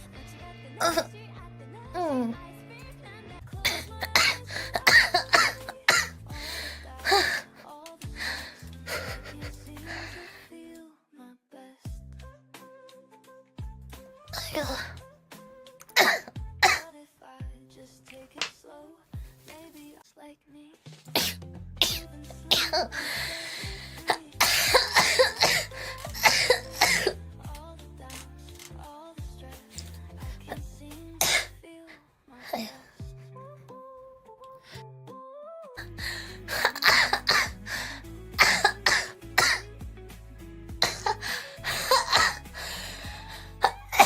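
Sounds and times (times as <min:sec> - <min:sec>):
background music: 0:00.0 - 0:44.0
woman coughing: 0:00.8 - 0:01.1, 0:03.7 - 0:06.2, 0:07.1 - 0:07.5, 0:14.4 - 0:14.9, 0:16.0 - 0:16.8, 0:21.2 - 0:22.9, 0:24.0 - 0:27.2, 0:31.2 - 0:31.5, 0:36.5 - 0:37.7, 0:38.4 - 0:39.7, 0:40.8 - 0:42.5, 0:43.6 - 0:44.0.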